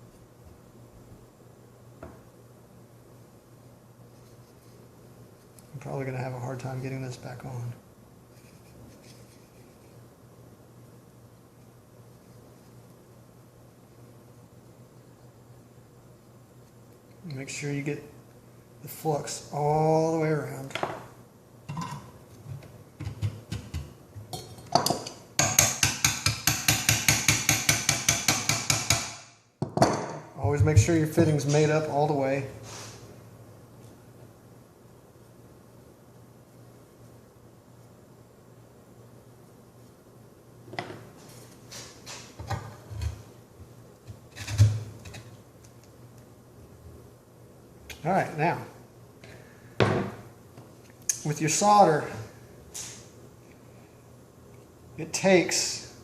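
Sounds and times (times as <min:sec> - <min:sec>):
copper pipe and tools knocking: 0:23.0 - 0:30.9.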